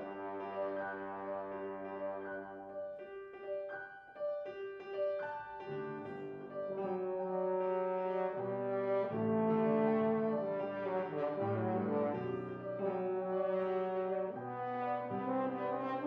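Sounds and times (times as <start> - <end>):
french horn: 0.0 - 2.7, 6.0 - 16.0
piano: 0.0 - 16.0.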